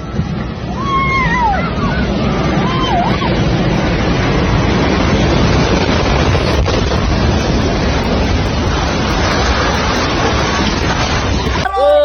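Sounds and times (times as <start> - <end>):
wind buffeting microphone: 0.0 - 12.0
rushing water: 1.5 - 12.0.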